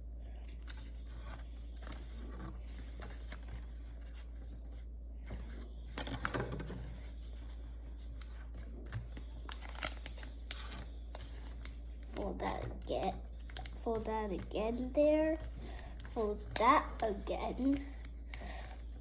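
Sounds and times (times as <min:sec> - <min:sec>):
paper rustling and crinkling: 0:00.4 - 0:19.0.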